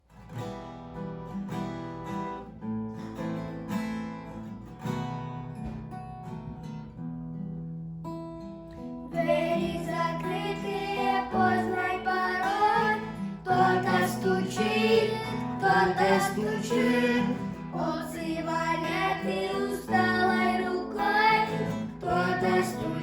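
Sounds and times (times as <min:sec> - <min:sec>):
acoustic guitar strumming: 0:00.0 - 0:23.0
people singing: 0:09.1 - 0:23.0.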